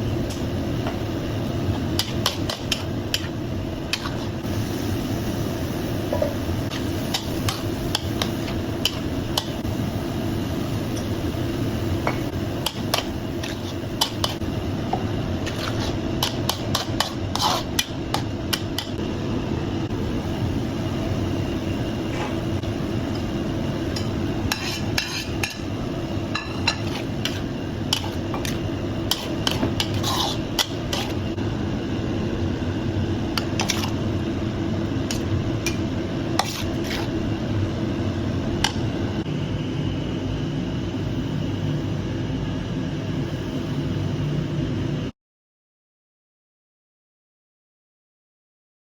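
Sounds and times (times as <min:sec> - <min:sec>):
metal spatula scraping in wok: 0:15.4 - 0:18.2, 0:23.9 - 0:25.7, 0:26.4 - 0:31.2, 0:36.4 - 0:37.2.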